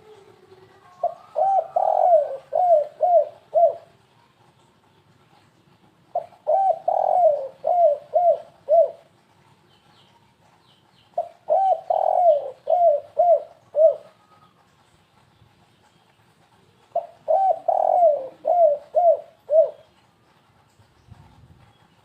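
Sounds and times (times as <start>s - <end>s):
dove cooing: 0.0s - 4.0s, 6.1s - 9.1s, 11.2s - 14.6s, 16.9s - 20.0s.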